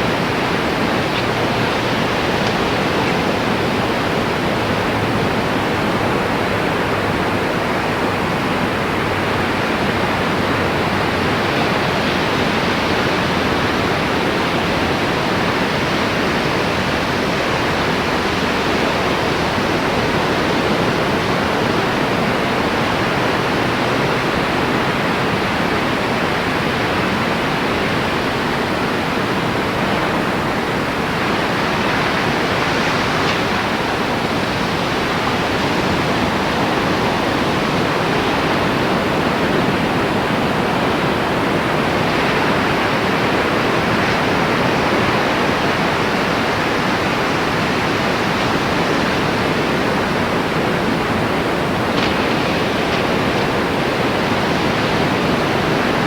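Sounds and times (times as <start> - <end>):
strong wind on microphone: 0.0 - 56.0.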